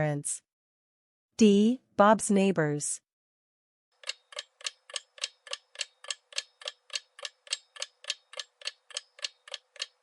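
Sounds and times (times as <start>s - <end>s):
clock ticking: 4.0s - 10.0s.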